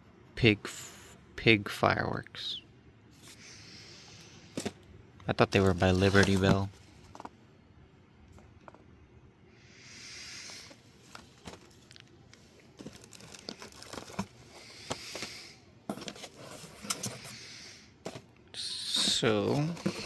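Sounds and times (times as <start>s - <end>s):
packaging rustling: 5.5s - 7.3s, 12.7s - 17.4s, 19.0s - 20.0s
packaging crinkling and tapping: 12.8s - 15.3s.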